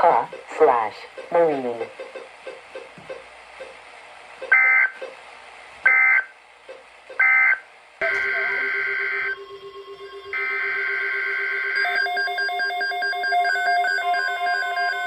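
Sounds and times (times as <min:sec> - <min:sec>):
shrill digital data bursts: 0:08.0 - 0:15.0
steady low tone: 0:08.0 - 0:15.0.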